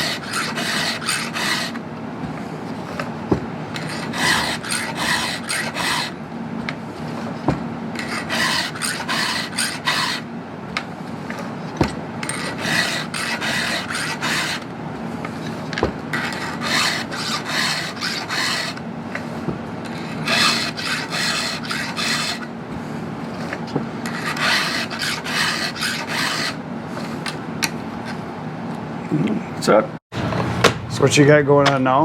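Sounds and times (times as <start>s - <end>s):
file rasping on chainsaw chain: 0.0s - 1.8s, 3.8s - 6.2s, 8.0s - 10.2s, 12.2s - 14.6s, 16.2s - 18.8s, 20.0s - 22.5s, 24.1s - 26.6s.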